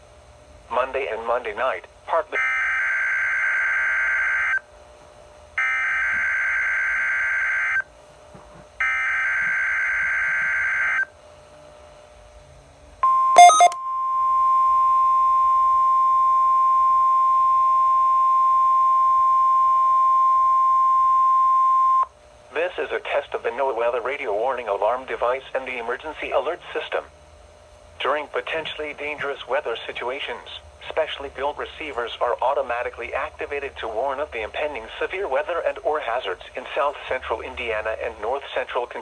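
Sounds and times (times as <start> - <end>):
steady warning alarm tone: 13.0 - 13.8.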